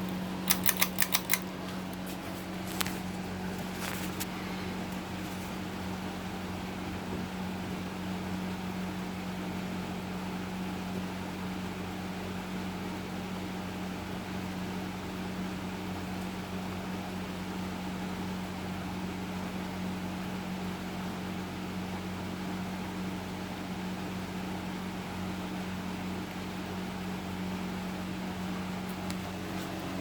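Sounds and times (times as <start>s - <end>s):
fan air rushing: 0.0s - 10.6s, 22.7s - 30.0s
ceiling fan motor hum: 0.0s - 30.0s.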